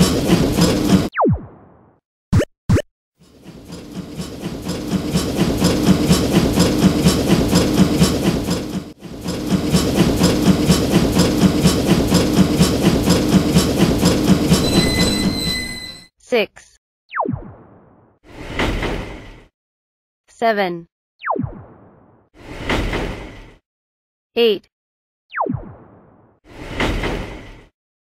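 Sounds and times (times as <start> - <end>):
train wheels clickety-clack: 0.0 - 1.1, 3.2 - 15.8.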